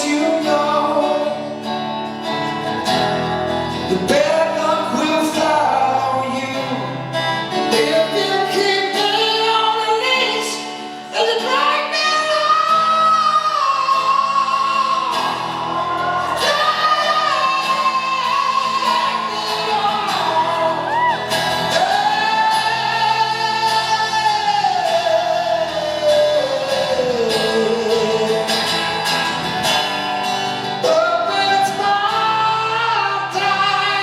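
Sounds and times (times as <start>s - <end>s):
live rock band accompaniment: 0.0s - 34.0s
man singing long high notes: 11.1s - 28.7s.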